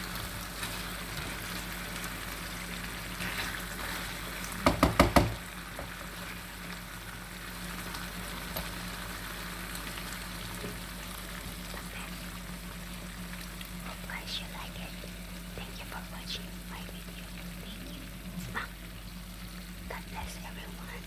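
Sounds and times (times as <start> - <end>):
sharp knocks: 4.6 - 5.4
faint hiss: 13.8 - 18.8, 19.8 - 21.0.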